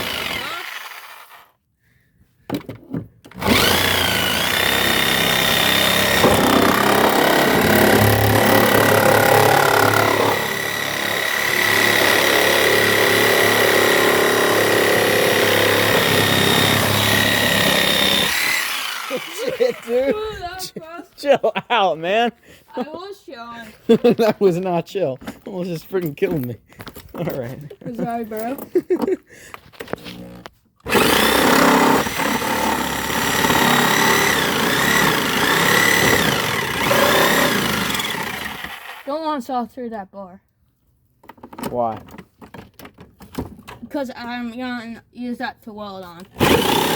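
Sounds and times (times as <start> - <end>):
electric saw cutting plastic: 0.0 - 1.6, 3.3 - 20.1, 29.9 - 39.1, 46.3 - 46.9.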